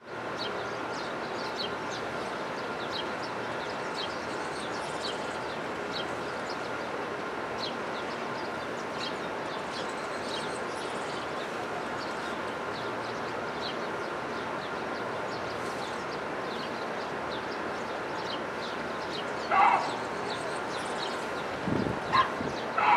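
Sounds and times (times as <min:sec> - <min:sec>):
small birds chirping: 0:17.8 - 0:22.9.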